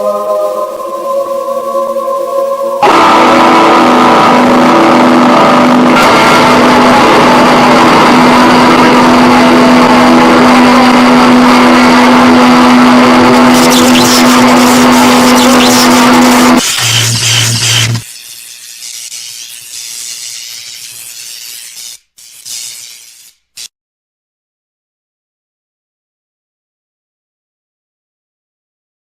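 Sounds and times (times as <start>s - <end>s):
steady droning hum: 0.0s - 18.0s
harsh static noise: 0.0s - 23.7s.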